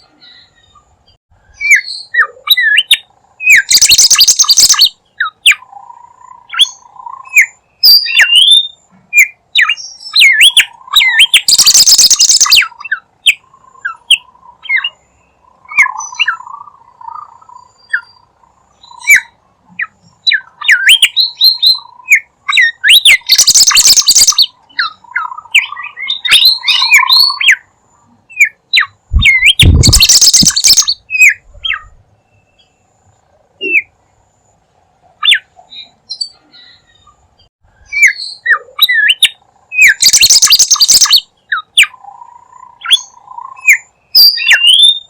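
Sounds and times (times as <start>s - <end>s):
bird chirps and whistles: 1.5s - 5.6s, 6.5s - 15.0s, 18.8s - 27.6s, 28.3s - 32.0s, 37.8s - 42.0s, 42.8s - 45.0s.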